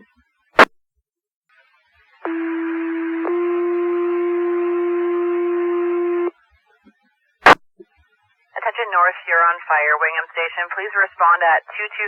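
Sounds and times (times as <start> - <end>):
two-tone radio page: 2.2 - 6.3, 8.6 - 12.0
radio hiss: 8.6 - 12.0.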